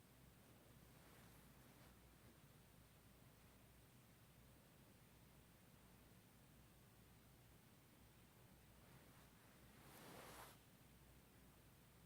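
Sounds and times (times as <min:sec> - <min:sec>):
soft rustle: 0:00.7 - 0:02.5, 0:08.7 - 0:10.7.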